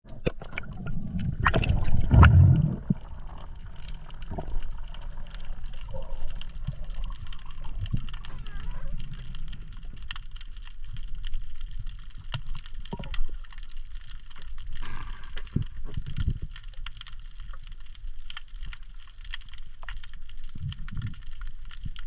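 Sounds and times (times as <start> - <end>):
water sloshing and lapping: 0.1 - 10.0
steady low rumble: 0.8 - 11.3.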